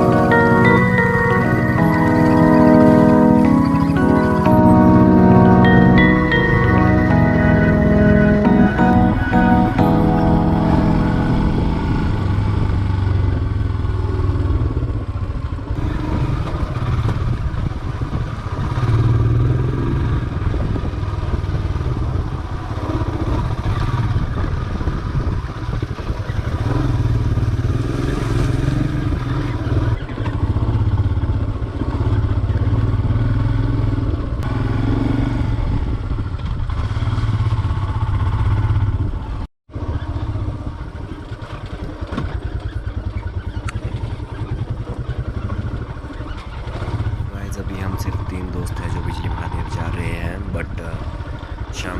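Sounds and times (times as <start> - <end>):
motorcycle engine revving: 10.7 - 51.9.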